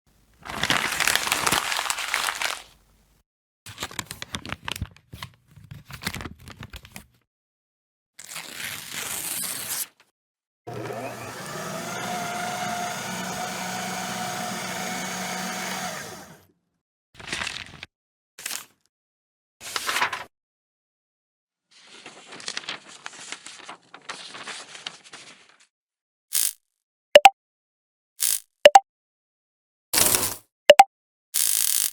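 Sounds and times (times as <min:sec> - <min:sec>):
paper crinkling: 0:00.4 - 0:02.8, 0:22.0 - 0:25.6
paper crumpling: 0:00.4 - 0:02.8, 0:22.0 - 0:25.6
paper rustling: 0:00.4 - 0:02.8, 0:19.7 - 0:20.2, 0:21.8 - 0:25.6.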